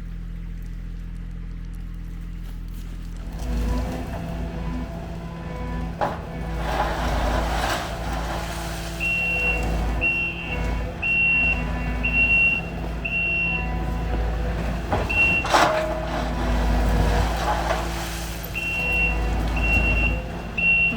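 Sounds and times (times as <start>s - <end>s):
diesel engine running: 0.0s - 20.9s
reverse alarm beeping: 8.8s - 16.2s, 18.5s - 20.9s.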